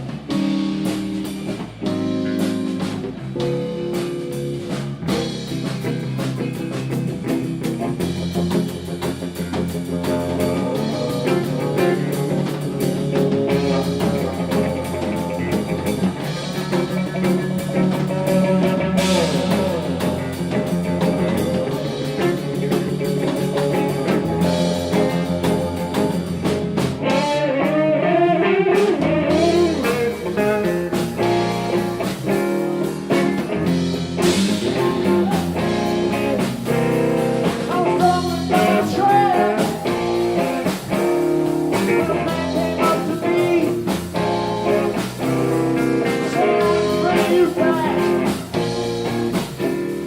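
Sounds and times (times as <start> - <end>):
blues-rock music: 0.0 - 50.0
electric guitar bending notes: 0.0 - 50.0
person singing: 34.7 - 35.9, 37.6 - 40.8, 41.8 - 45.0, 46.1 - 48.6.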